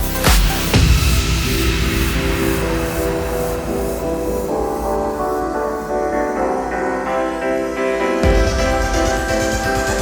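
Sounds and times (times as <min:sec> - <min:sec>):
electronic music with heavy beat: 0:00.0 - 0:10.0
held layered synth tones: 0:00.8 - 0:08.8.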